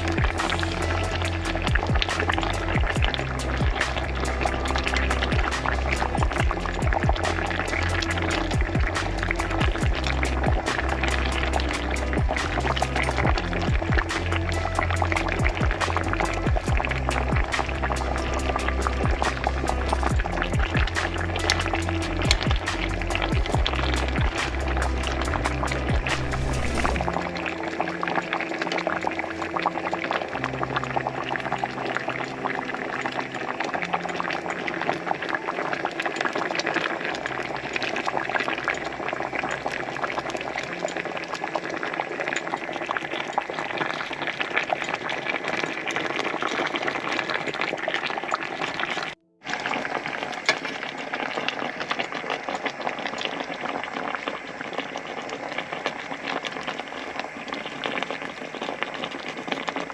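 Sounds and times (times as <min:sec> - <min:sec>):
soft background music: 0:00.0 - 0:47.4
broth bubbling at a boil: 0:00.0 - 0:59.9.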